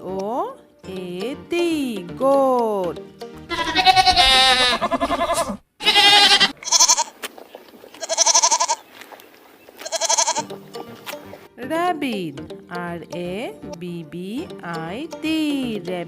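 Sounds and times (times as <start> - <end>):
goat bleating: 3.5 - 7.2, 8.0 - 8.9, 9.8 - 10.5.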